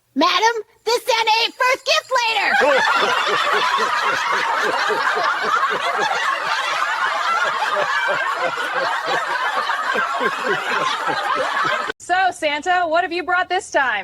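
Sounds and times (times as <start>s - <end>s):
people laughing: 2.5s - 12.0s.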